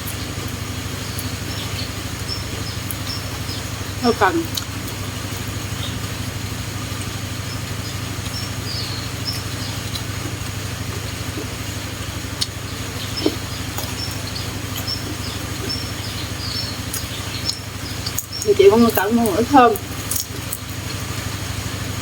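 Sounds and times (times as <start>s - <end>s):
engine idling drone: 0.0s - 22.0s
high bird chirps: 0.1s - 4.8s, 7.4s - 10.1s, 12.4s - 19.5s.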